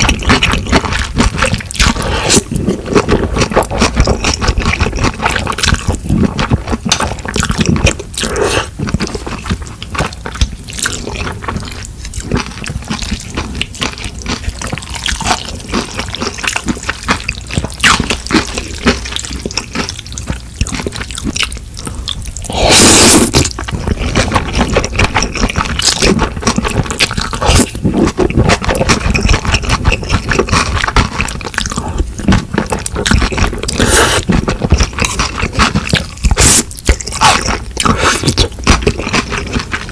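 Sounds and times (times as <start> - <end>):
wet chewing: 0.0 - 39.9
mouth clicks and smacks: 19.5 - 39.9.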